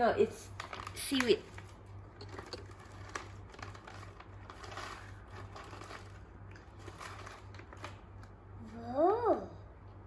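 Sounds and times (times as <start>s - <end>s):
steady low hum: 0.0s - 10.0s
plastic wrapper crinkling: 0.4s - 8.4s.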